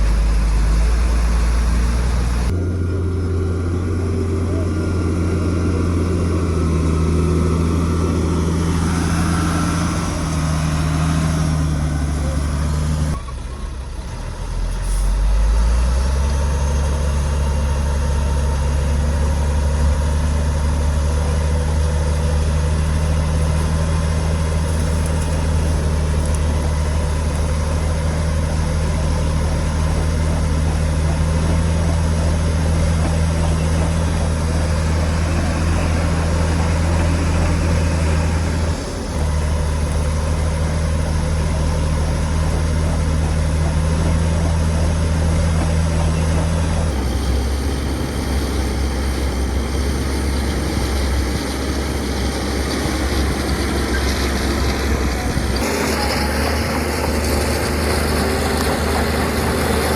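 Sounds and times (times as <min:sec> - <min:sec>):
heavy diesel engine running: 0:00.0 - 0:59.9.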